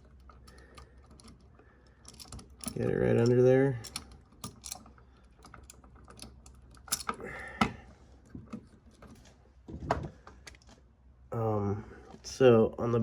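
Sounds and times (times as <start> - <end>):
tools clicking and scraping on wire: 0.0 - 7.2.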